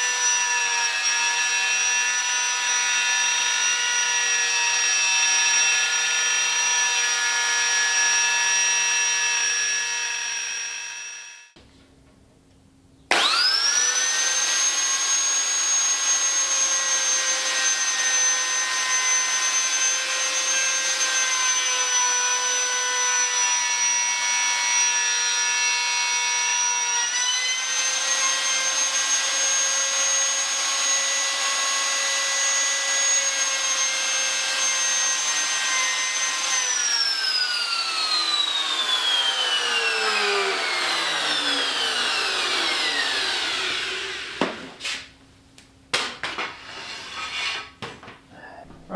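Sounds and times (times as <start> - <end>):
wood router whining: 0.0 - 11.6, 13.1 - 45.1, 46.3 - 48.9.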